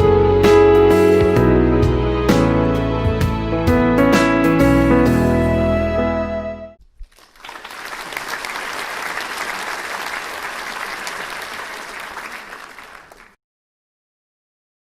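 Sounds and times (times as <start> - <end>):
audience applauding: 7.0 - 13.4.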